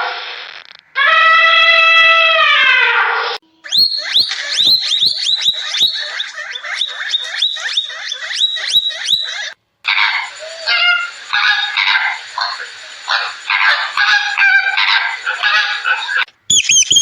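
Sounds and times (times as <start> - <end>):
animal squeaking calls: 3.6 - 17.0.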